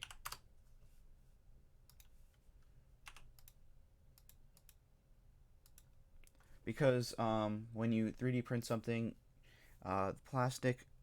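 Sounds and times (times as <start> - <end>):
computer keyboard keystrokes: 0.0 - 0.4, 3.0 - 3.6.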